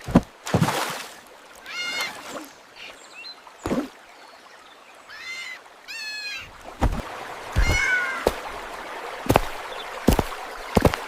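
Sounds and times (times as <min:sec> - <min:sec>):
kittens mewing: 0:07.6 - 0:08.3.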